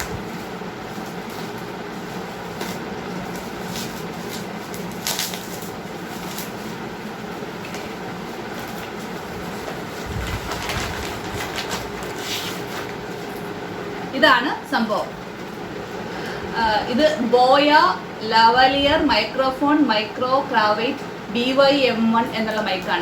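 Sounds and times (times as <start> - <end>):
plastic packaging rustling: 0.0 - 13.6
steady background hum: 0.0 - 23.0.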